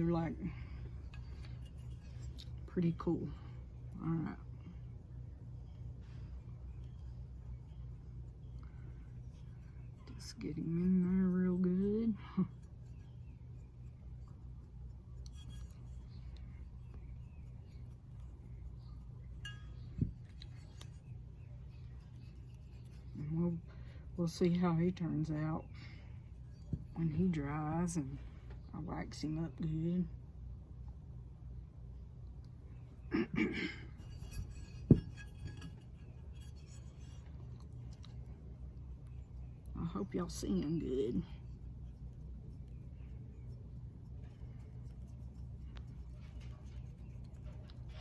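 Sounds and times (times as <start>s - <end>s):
steady low hum: 0.0s - 48.0s
hard object clinking: 19.4s - 20.8s, 34.0s - 37.2s
light rattling: 33.8s - 38.4s.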